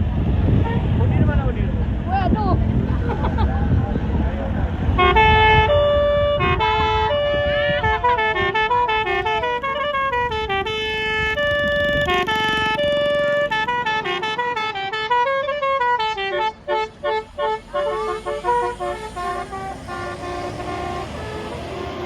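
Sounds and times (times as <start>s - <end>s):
multi-tone bus horn melody: 4.8s - 22.0s.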